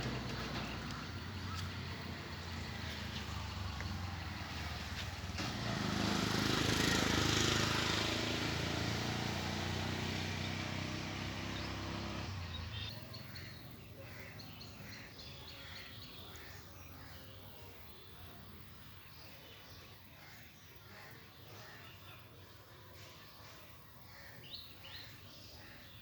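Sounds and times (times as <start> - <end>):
engine running: 0.0 - 13.4.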